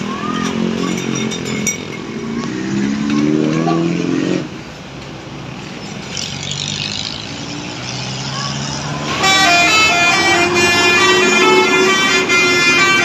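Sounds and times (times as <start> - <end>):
vehicle engine accelerating past: 2.2 - 4.6, 6.0 - 9.2.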